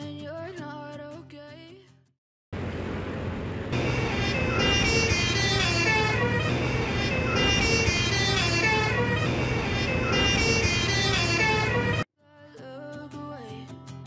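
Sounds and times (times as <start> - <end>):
vehicle engine and road noise: 2.5 - 12.1
bus musical air horn tune: 3.8 - 12.1.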